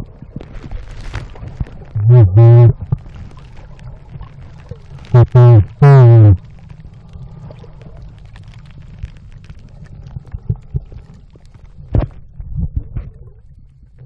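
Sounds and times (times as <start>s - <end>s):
underwater low rumble: 0.0s - 14.0s
faint clicks: 2.6s - 14.0s.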